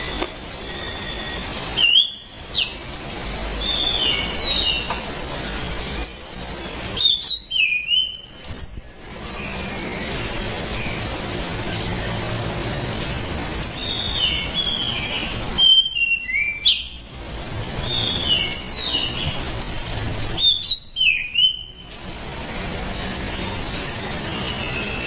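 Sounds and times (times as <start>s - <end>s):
thrush singing whistled phrases: 0.6s - 3.0s, 13.8s - 16.9s, 20.4s - 21.8s, 23.8s - 25.0s.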